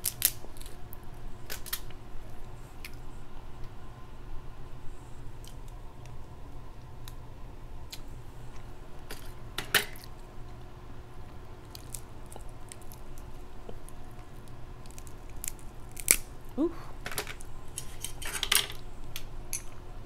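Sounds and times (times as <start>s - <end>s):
shell cracking: 0.0s - 0.8s, 1.4s - 2.0s, 11.7s - 16.4s.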